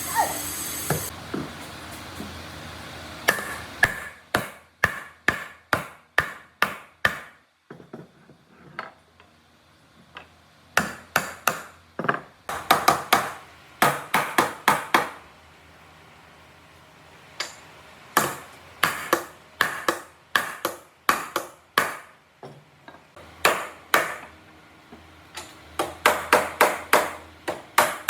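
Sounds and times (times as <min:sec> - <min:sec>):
hammer striking wood: 0:03.3 - 0:07.4, 0:12.5 - 0:15.2, 0:18.2 - 0:22.2, 0:23.4 - 0:24.3, 0:25.8 - 0:28.0.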